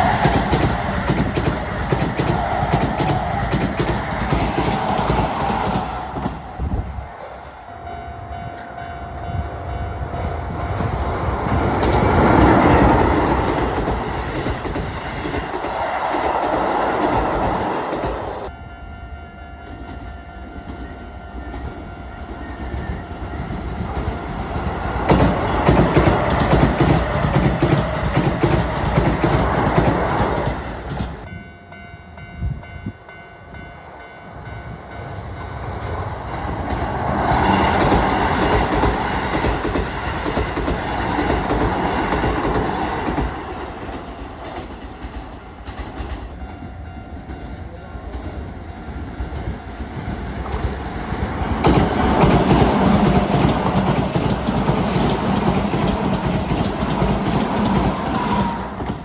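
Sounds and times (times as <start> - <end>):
train wheels clattering on rail joints: 0.0 - 6.8, 10.6 - 18.5, 22.5 - 31.3, 35.5 - 59.0
level crossing warning bells: 6.9 - 14.8, 17.8 - 29.3, 31.2 - 40.0, 46.1 - 54.6.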